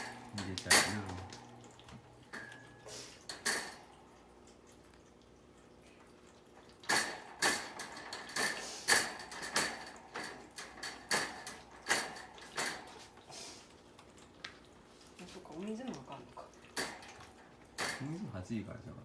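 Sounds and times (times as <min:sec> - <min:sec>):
wire cage rattling: 0:00.0 - 0:04.3, 0:06.6 - 0:13.2, 0:16.6 - 0:18.2.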